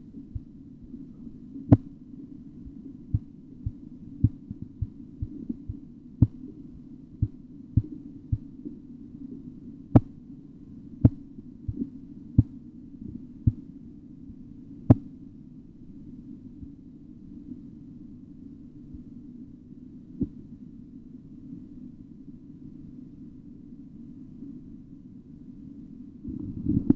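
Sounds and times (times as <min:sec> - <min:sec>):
steady low hum: 0:00.0 - 0:26.9
stethoscope heartbeat taps: 0:02.7 - 0:08.5, 0:11.0 - 0:12.6.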